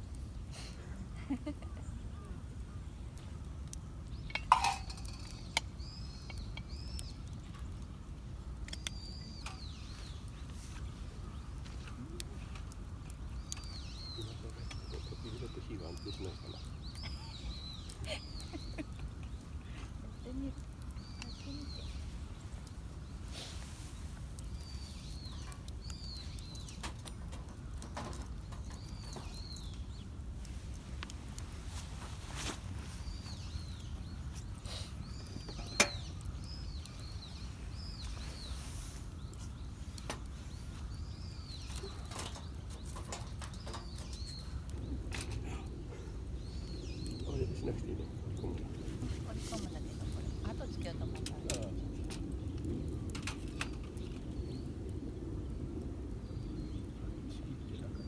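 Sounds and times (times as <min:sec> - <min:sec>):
campfire crackling: 0:00.0 - 0:58.0
metal cookware clanking: 0:04.3 - 0:05.4
steady low rumble: 0:23.8 - 0:58.0.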